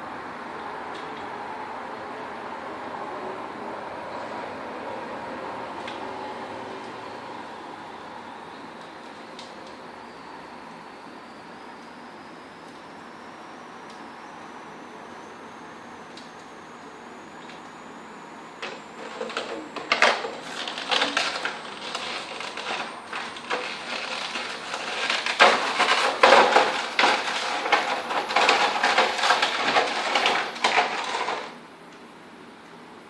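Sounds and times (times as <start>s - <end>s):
packaging crinkling and tearing: 18.6s - 31.6s.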